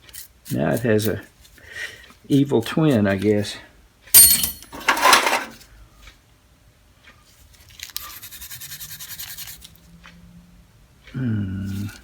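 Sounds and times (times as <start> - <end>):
wrenches clattering: 4.2 - 5.6.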